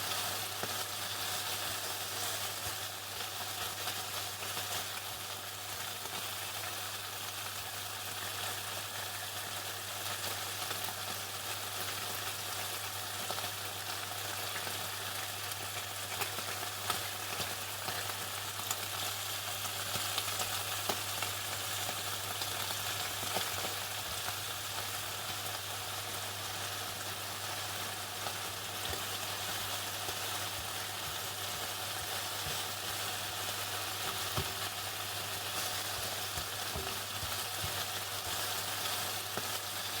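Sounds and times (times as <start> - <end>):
chicken sizzling in hot oil: 0.0 - 40.0.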